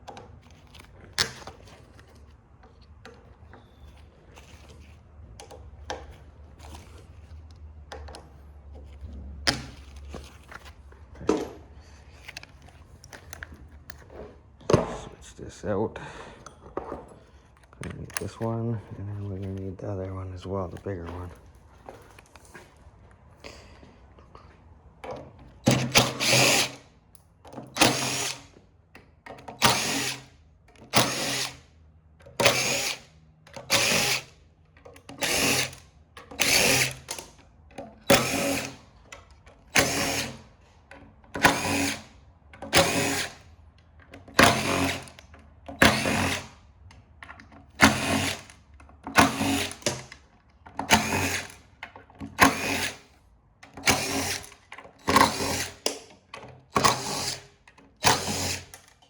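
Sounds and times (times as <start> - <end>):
power drill bursts: 25.6 - 26.8, 27.7 - 28.5, 29.6 - 31.7, 32.4 - 34.4, 35.1 - 37.2, 38.0 - 38.8, 39.7 - 40.5, 41.4 - 42.1, 42.7 - 43.4, 44.4 - 45.2, 45.8 - 46.6, 47.8 - 50.1, 50.9 - 51.6, 52.4 - 53.1, 53.8 - 55.9, 56.7 - 58.8.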